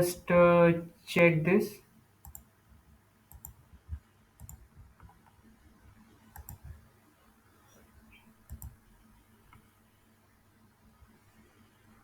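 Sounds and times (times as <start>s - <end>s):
computer mouse clicks: 2.2s - 2.5s, 3.3s - 5.4s, 6.3s - 6.8s, 8.4s - 8.8s.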